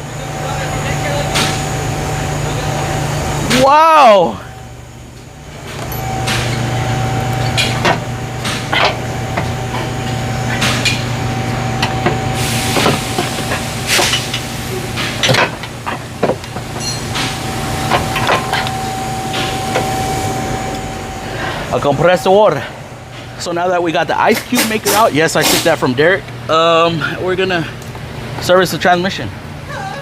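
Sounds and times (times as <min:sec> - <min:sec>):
steady low hum: 0:00.0 - 0:30.0
metal tools clanking: 0:15.0 - 0:19.9.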